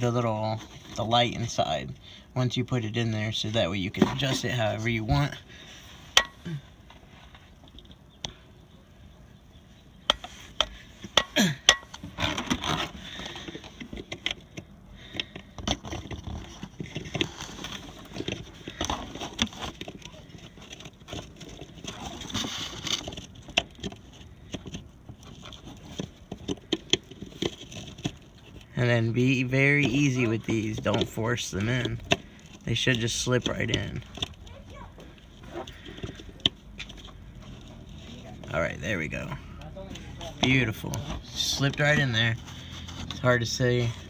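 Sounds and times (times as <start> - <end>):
rustling handling noise: 0.0 - 44.0
plastic parts clicking and scraping: 10.0 - 44.0.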